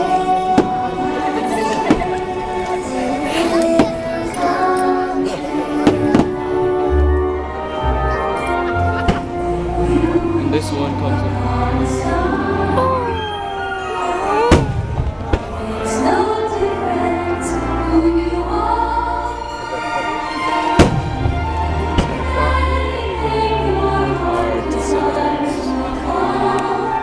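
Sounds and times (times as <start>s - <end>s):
orchestral music with singing: 0.0s - 27.0s
firework bangs: 0.4s - 2.2s, 5.8s - 6.5s, 14.5s - 15.8s, 20.7s - 22.3s.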